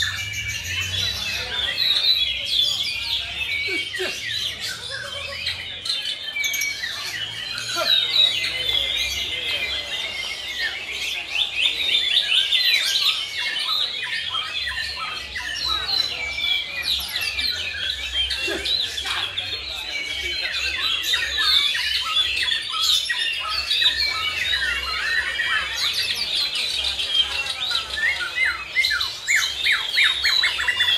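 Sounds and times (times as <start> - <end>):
songbirds singing: 0.0 - 30.9.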